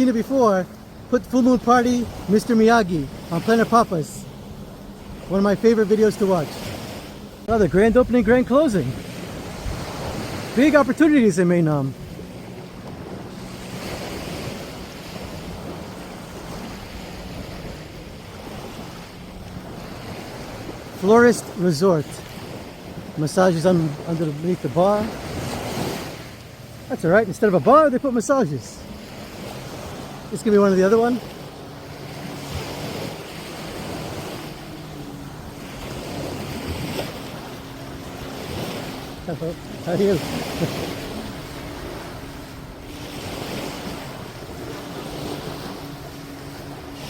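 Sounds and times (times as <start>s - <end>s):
waves washing onto beach: 0.0s - 47.0s
wind buffeting microphone: 0.0s - 47.0s
wind on microphone: 6.1s - 26.6s.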